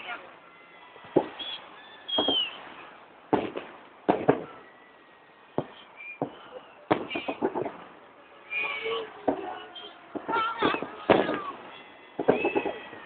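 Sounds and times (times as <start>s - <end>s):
crackling firework bangs: 1.0s - 4.9s, 5.5s - 8.0s, 9.2s - 13.0s
firework booms: 1.1s - 4.7s, 5.5s - 8.0s, 9.2s - 13.0s.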